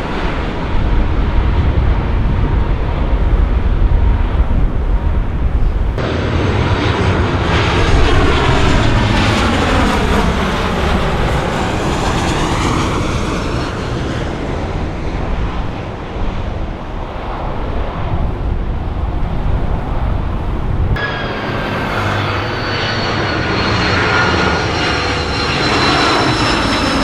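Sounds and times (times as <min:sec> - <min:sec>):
jet airliner flying past: 0:00.0 - 0:27.0.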